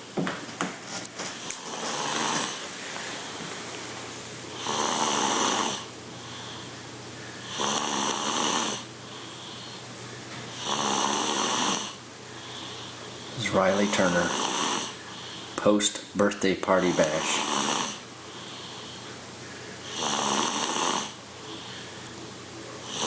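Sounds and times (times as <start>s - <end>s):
soft breaths: 0.9s - 15.6s, 17.0s - 23.0s
woman snoring: 1.6s - 2.6s, 4.5s - 6.7s, 7.4s - 9.8s, 10.5s - 12.0s, 12.6s - 15.0s, 17.2s - 18.1s, 19.8s - 21.7s.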